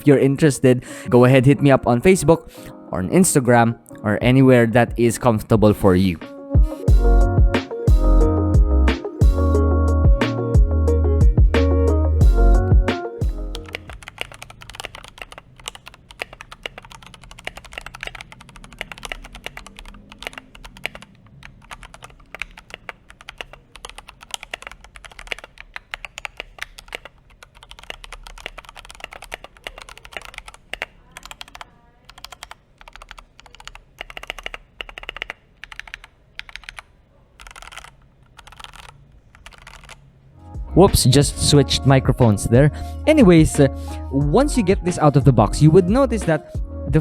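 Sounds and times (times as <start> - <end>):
mechanical keyboard typing: 13.5 - 40.0.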